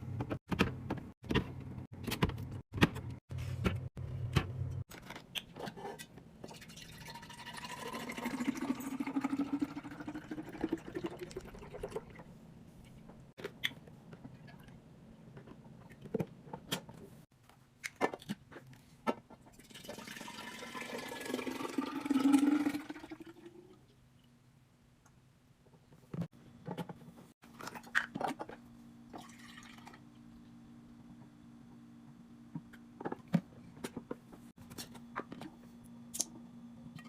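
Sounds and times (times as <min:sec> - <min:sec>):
liquid pouring into container: 0:06.5 - 0:12.2, 0:19.6 - 0:23.6, 0:29.2 - 0:30.1.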